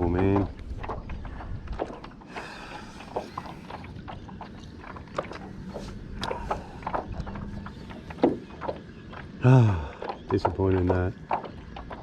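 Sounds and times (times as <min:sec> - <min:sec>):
low wind rumble: 0:00.0 - 0:12.0
water lapping at hull: 0:00.0 - 0:12.0
clicks and knocks on plastic kayak: 0:10.0 - 0:12.0.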